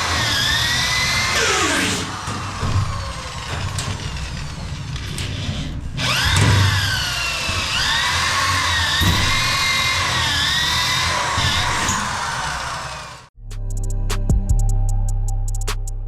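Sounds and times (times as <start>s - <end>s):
power drill whining: 0.0s - 13.3s.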